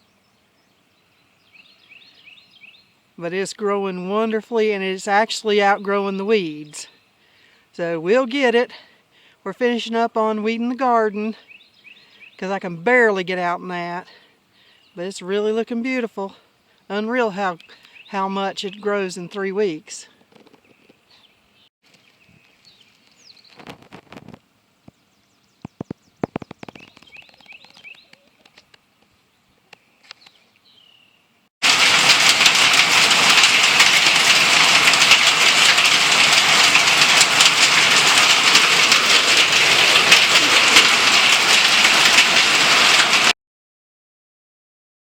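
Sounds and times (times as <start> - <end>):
faint birdsong: 0.0 - 3.6, 5.6 - 7.8, 11.0 - 12.8, 14.0 - 19.5, 20.1 - 23.8, 24.8 - 31.4
heavy rain hissing: 31.6 - 43.4.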